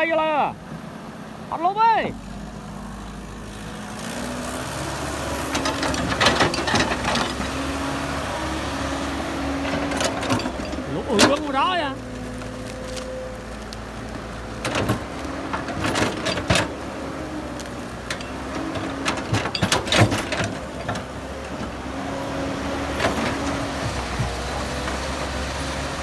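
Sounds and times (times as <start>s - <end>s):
heavy diesel machinery running: 2.2s - 26.0s
sharp metal clanks and knocks: 5.4s - 7.8s, 9.4s - 11.9s, 14.5s - 17.0s, 18.0s - 21.7s.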